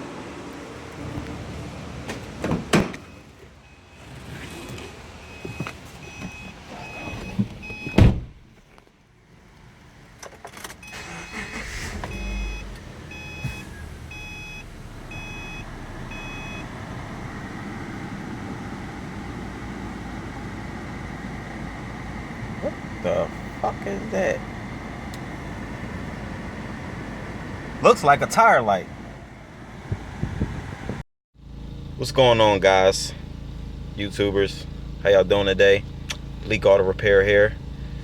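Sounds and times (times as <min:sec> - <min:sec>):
car door shutting thump: 0:02.1 - 0:03.1, 0:07.0 - 0:08.4
car warning chime beeping: 0:10.8 - 0:16.8.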